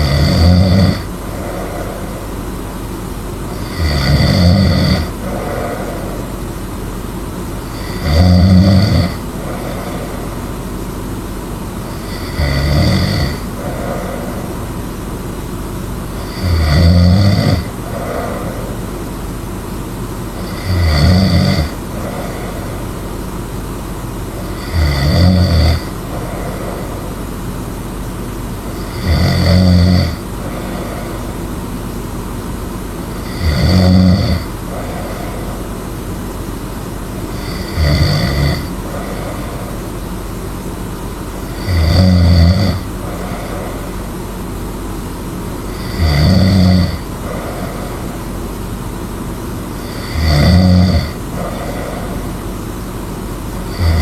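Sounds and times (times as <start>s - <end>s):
person snoring loudly: 0.0s - 2.8s, 3.4s - 6.7s, 7.6s - 10.8s, 11.8s - 14.9s, 16.1s - 19.2s, 20.3s - 23.3s, 24.4s - 27.3s, 28.6s - 31.6s, 33.1s - 35.8s, 37.2s - 40.0s, 41.4s - 44.1s, 45.6s - 48.2s, 49.7s - 52.6s, 53.5s - 54.0s
steady hiss: 0.0s - 54.0s.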